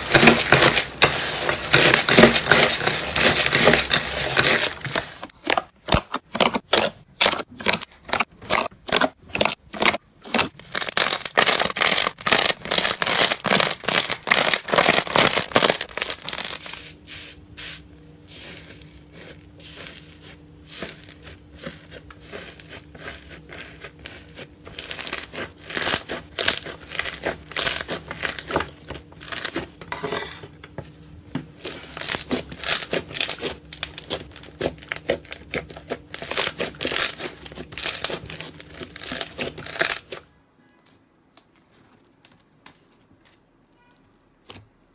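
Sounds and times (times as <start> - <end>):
slime crackling and popping: 8.5 - 16.6, 21.2 - 28.6, 32.0 - 40.2.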